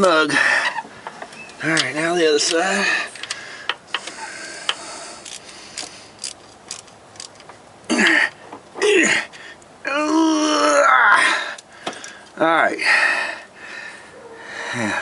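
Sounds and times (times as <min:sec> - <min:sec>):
hand tools clicking and tapping: 0:03.2 - 0:07.6, 0:11.5 - 0:12.4.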